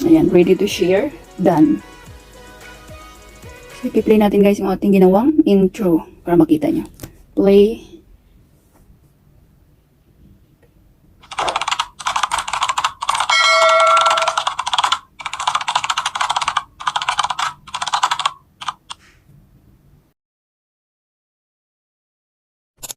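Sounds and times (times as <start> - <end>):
keyboard typing clicks: 11.3 - 19.0
short ringing tone: 13.3 - 14.6.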